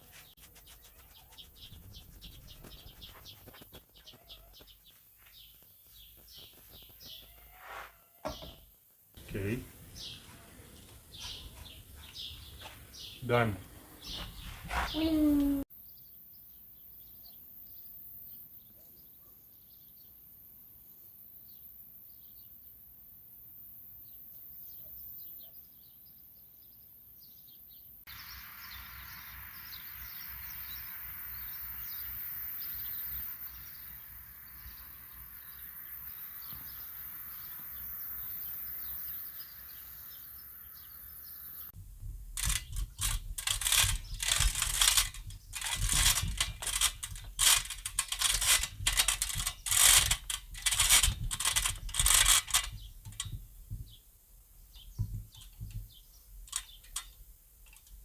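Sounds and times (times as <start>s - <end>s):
birds chirping: 0.0s - 15.6s, 27.7s - 41.8s, 42.4s - 58.0s
faint open-air hiss: 0.0s - 58.0s.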